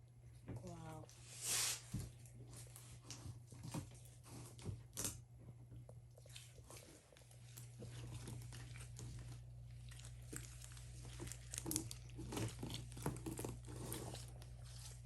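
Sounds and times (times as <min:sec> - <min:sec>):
hands squishing slime: 0:06.0 - 0:15.0.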